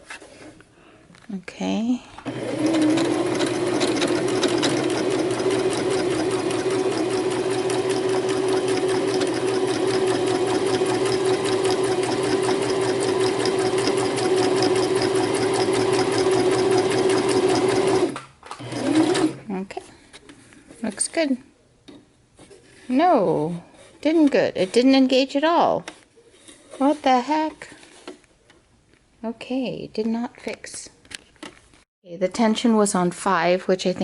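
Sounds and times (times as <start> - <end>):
sewing machine running: 2.3 - 19.4.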